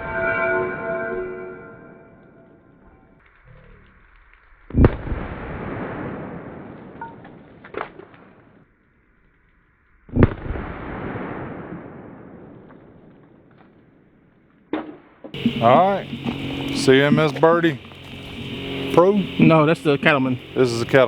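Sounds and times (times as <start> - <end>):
sharp crack: 3.2 - 8.6, 10.1 - 14.0.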